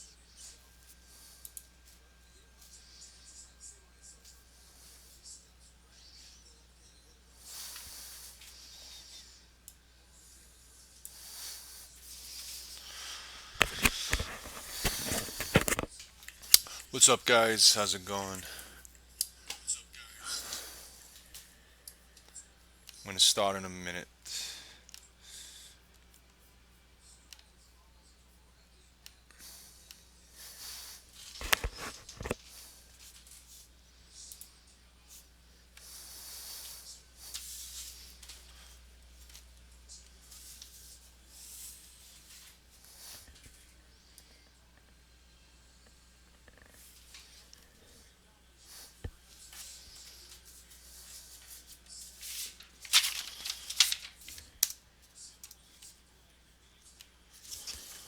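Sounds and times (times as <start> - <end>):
packaging rustling and crinkling: 13.6 - 15.9, 31.3 - 32.4, 52.3 - 54.7
packaging tearing: 52.8 - 54.2.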